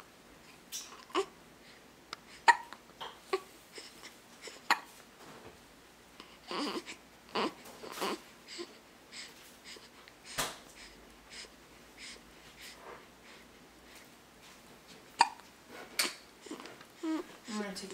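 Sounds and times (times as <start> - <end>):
baby hiccuping: 0.7 - 1.3, 2.4 - 4.9, 15.1 - 17.2
baby breathy sounds: 3.3 - 5.0, 6.2 - 14.1, 15.2 - 17.7.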